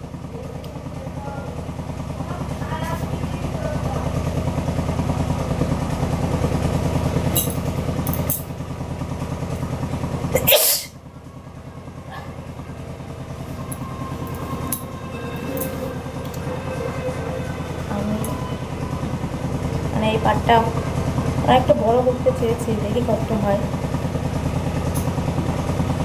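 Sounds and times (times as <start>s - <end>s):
pulsing engine drone: 0.0s - 26.0s
woman sneezing: 10.4s - 11.0s.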